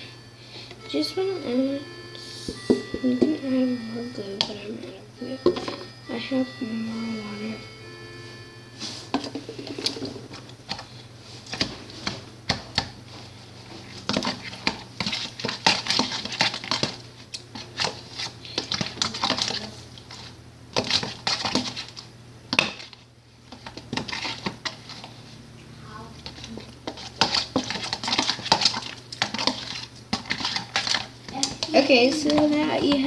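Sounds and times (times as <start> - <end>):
spoon clinking and scraping bowl: 26.2 - 33.0.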